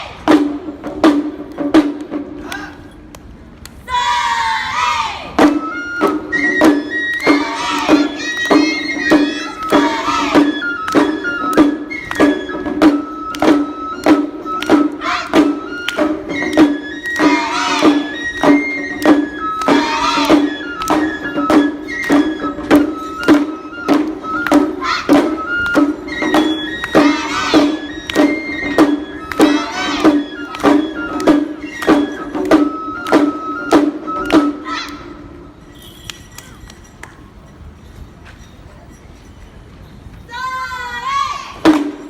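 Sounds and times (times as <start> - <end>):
drum strikes: 0.2 - 2.4, 5.4 - 34.8, 41.6 - 42.0
flute-like high melody: 5.4 - 37.2.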